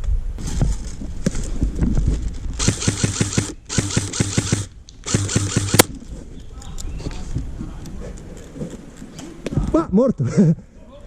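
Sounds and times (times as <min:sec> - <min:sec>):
airsoft rifle bursts with motor whirr: 0:02.6 - 0:05.9
sharp click: 0:02.6 - 0:05.9.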